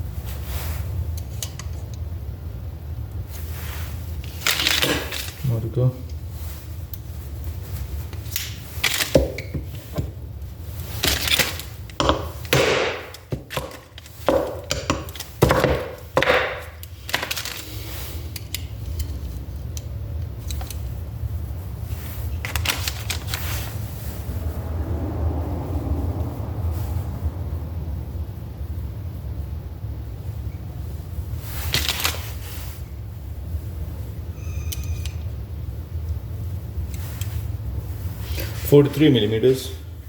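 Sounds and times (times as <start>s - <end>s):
steady low hum: 0.0s - 31.7s, 32.3s - 40.0s
sharp irregular knocks: 11.0s - 17.3s.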